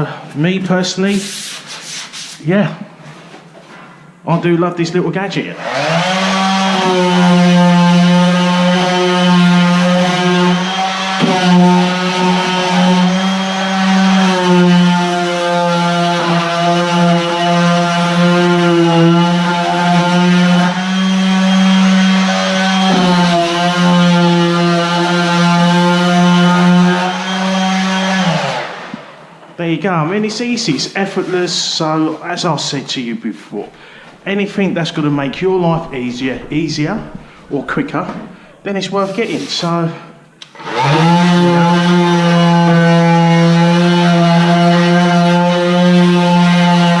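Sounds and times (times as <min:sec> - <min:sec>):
orbital sander running: 0:05.6 - 0:29.0
orbital sander motor hum: 0:19.6 - 0:25.3.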